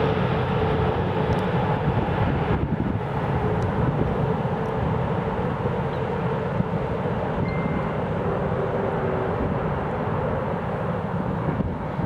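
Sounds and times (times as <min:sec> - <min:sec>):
faint engine whine: 0:00.0 - 0:12.0
jet engines rumbling: 0:00.0 - 0:12.0.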